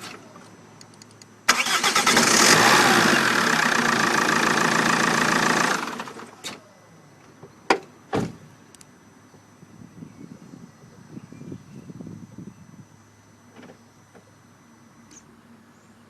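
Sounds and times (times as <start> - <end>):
diesel engine running: 1.4 - 9.9.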